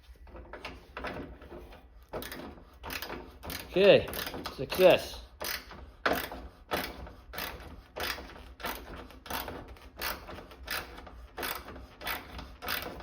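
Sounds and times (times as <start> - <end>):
ratchet wrench clicking: 2.2 - 4.6, 5.4 - 12.9.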